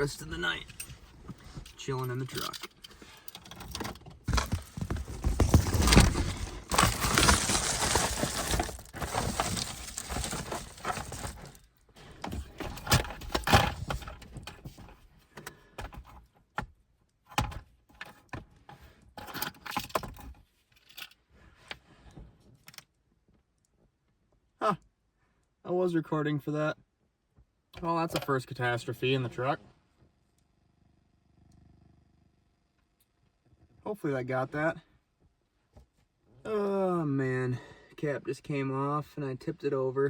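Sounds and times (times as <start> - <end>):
gear rustling and clattering: 0.5 - 15.0.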